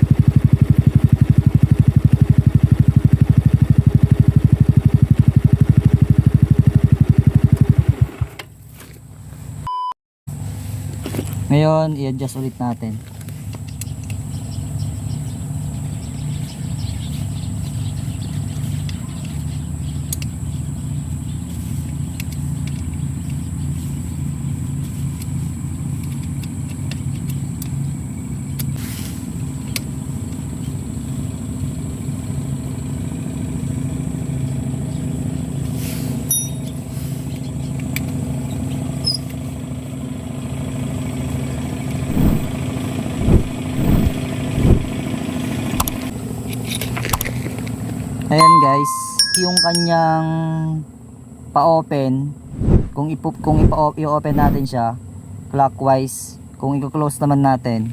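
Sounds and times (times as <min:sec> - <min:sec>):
motorcycle engine idling: 0:00.0 - 0:08.4, 0:13.6 - 0:28.7, 0:29.3 - 0:35.8, 0:36.4 - 0:46.5.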